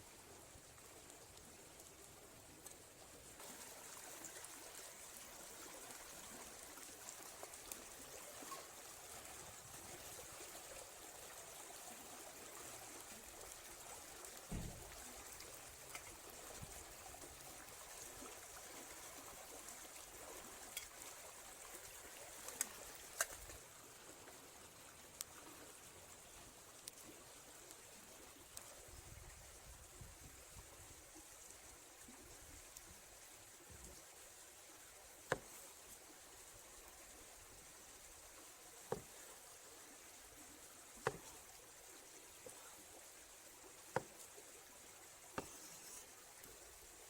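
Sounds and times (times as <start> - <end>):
trickle of running water: 0.0 - 47.0
low thump: 14.5 - 14.9.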